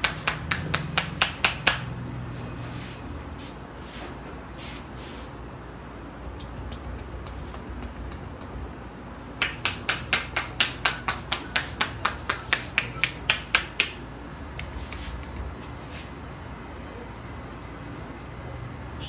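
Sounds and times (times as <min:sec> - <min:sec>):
rapid hand slaps: 0:00.0 - 0:02.2, 0:06.3 - 0:08.7, 0:09.4 - 0:16.1.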